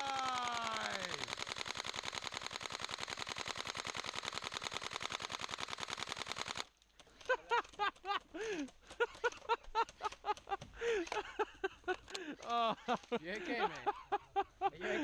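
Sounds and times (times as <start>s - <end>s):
airsoft gun full-auto burst: 0.0s - 6.7s.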